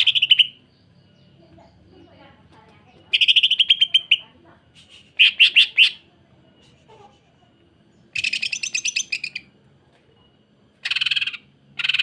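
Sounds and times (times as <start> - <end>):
bird calling in harsh notes: 0.0 - 0.7, 3.1 - 6.1, 8.1 - 9.6, 10.8 - 12.0.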